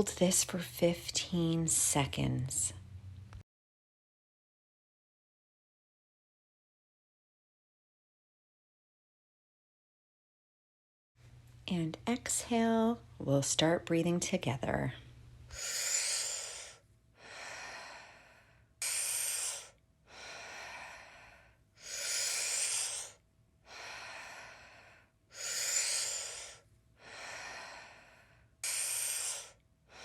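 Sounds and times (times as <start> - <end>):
person breathing deeply: 15.5 - 30.0.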